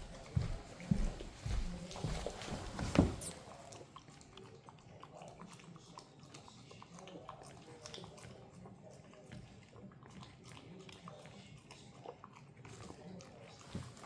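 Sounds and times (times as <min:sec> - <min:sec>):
puppy chewing: 0:00.0 - 0:14.0.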